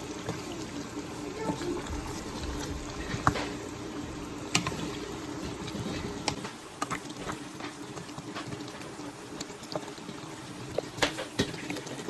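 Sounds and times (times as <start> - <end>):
pot of liquid bubbling: 0.0 - 12.0.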